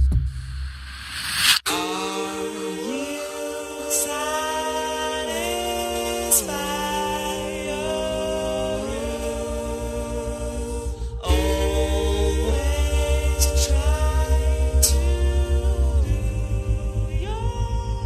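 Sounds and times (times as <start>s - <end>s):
voices singing in harmony: 1.7s - 18.0s
low pulsing beat: 6.8s - 18.0s.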